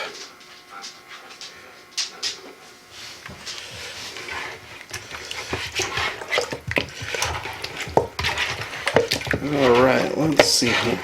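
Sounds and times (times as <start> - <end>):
wet squelches of meat in marinade: 4.2 - 11.0.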